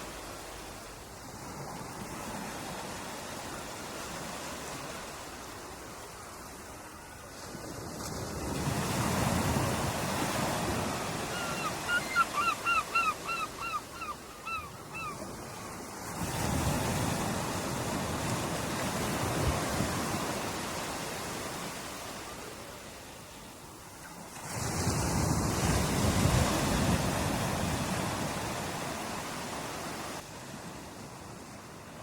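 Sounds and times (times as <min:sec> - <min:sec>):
ocean surf washing ashore: 0:00.0 - 0:32.0
bird calling rapidly: 0:11.2 - 0:15.2.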